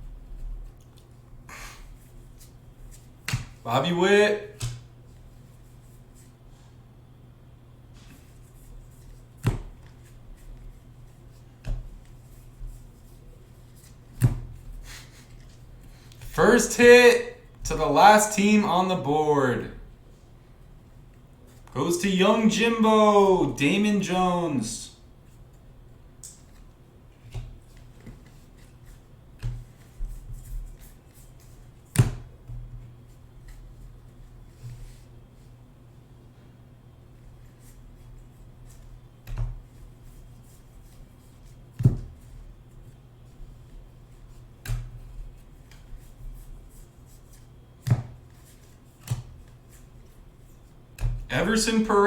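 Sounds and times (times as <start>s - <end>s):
cards tapping and rustling: 47.0s - 50.2s.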